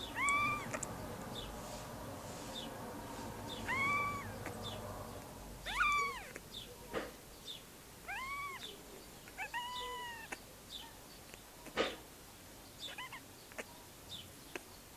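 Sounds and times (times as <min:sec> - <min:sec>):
kitten mewing: 0:00.0 - 0:00.9, 0:03.6 - 0:04.6, 0:05.6 - 0:06.5, 0:08.0 - 0:08.7, 0:09.3 - 0:10.4, 0:12.9 - 0:13.7.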